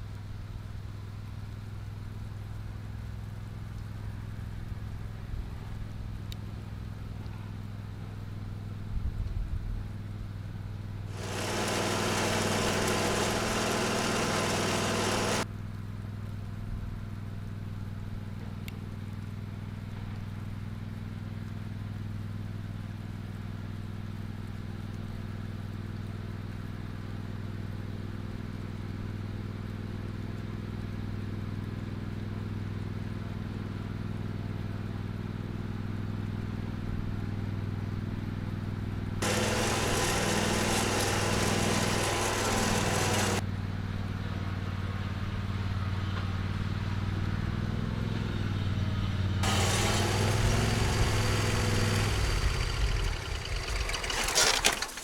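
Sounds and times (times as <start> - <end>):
small engine droning: 11.1 - 15.5, 39.2 - 55.0.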